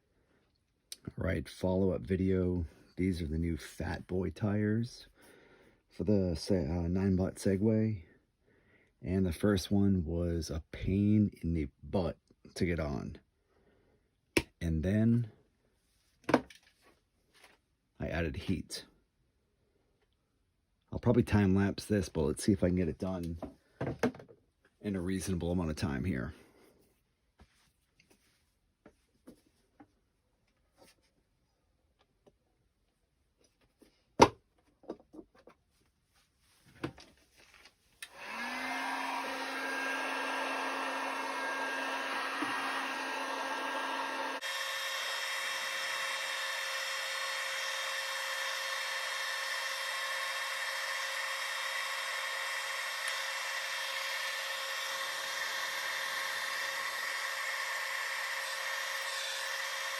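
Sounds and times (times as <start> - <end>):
hot-air blower running: 38.0 - 59.9.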